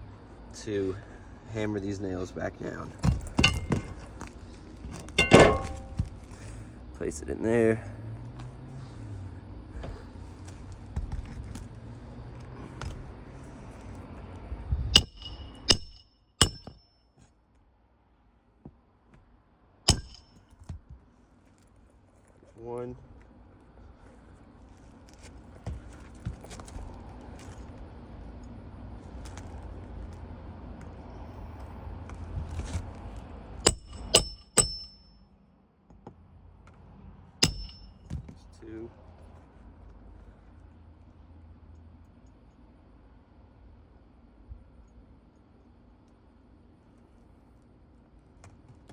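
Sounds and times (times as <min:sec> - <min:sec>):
low steady rumble: 0:00.0 - 0:16.9, 0:19.5 - 0:20.5, 0:21.1 - 0:48.5
hammer striking metal: 0:03.4 - 0:04.0, 0:05.2 - 0:06.1, 0:15.0 - 0:16.9, 0:19.9 - 0:20.4, 0:33.6 - 0:35.2, 0:37.4 - 0:38.2.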